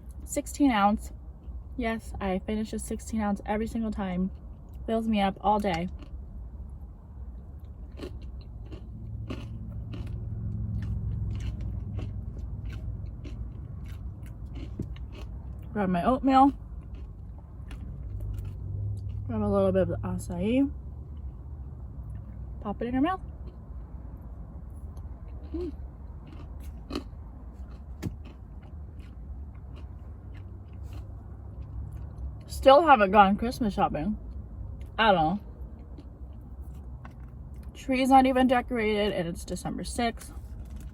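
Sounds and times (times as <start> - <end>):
closed-mouth hum: 0.0 - 37.8
low rumble: 0.0 - 37.8
chewing and crunching: 3.9 - 19.4, 23.2 - 32.5, 34.3 - 37.8.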